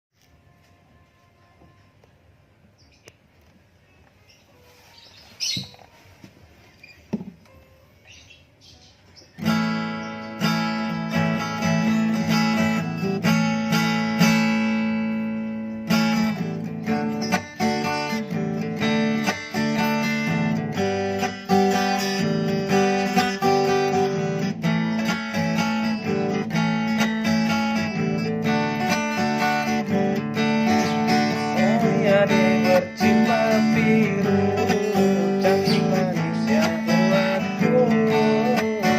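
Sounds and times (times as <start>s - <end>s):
acoustic guitar strumming: 9.3s - 38.9s.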